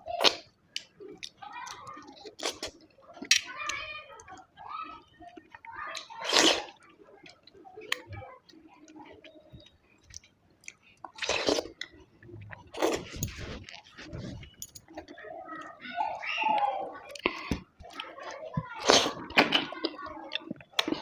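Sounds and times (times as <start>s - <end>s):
wet chewing of mango: 8.5s - 15.2s.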